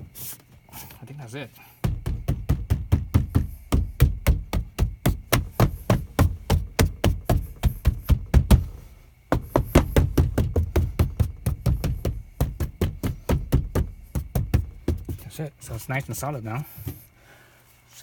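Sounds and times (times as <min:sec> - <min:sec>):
hand thumps on door panel: 0:01.8 - 0:15.4.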